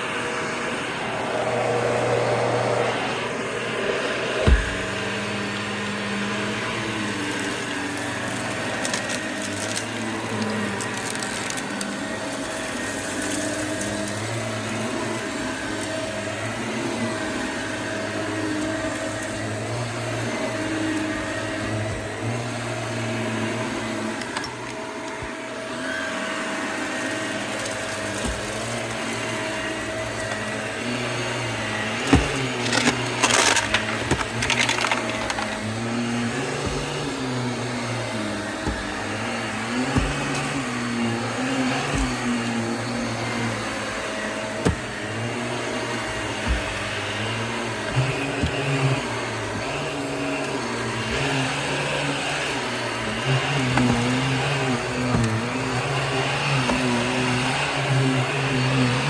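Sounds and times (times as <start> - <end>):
vacuum cleaner running over carpet: 0.0 - 59.0
debris crackling and rattling: 32.0 - 43.0.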